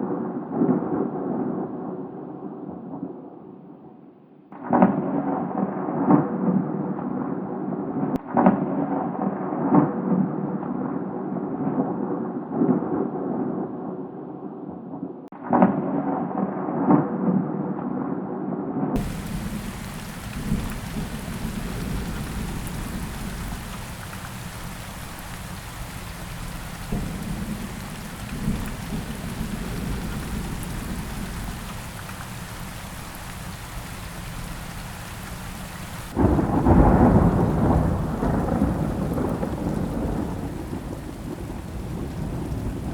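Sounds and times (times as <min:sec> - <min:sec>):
heavy rain hiss: 0:19.0 - 0:42.9
rumbling thunder: 0:19.0 - 0:42.9.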